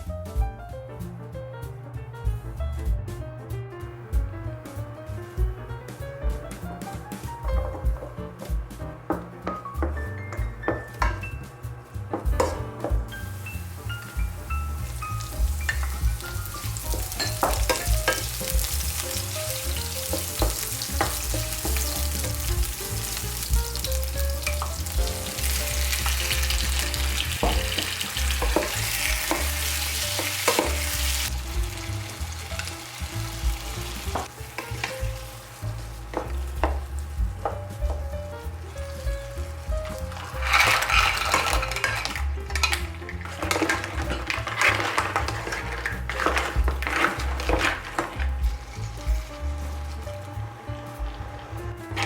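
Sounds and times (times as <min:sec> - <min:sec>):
soft background music: 0:00.0 - 0:52.0
utensil knocking against pan: 0:06.3 - 0:11.4, 0:12.1 - 0:13.1, 0:15.4 - 0:19.0, 0:19.8 - 0:30.9, 0:36.1 - 0:38.2
food sizzling in a pan: 0:12.4 - 0:52.0.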